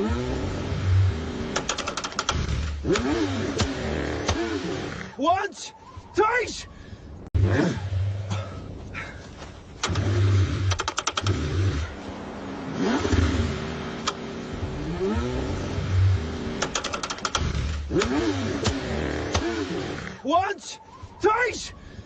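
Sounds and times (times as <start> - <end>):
car engine cranking: 0.0 - 5.2, 9.7 - 12.0, 12.7 - 20.2
rapid clicking: 1.5 - 3.7, 10.7 - 11.4, 16.6 - 19.5.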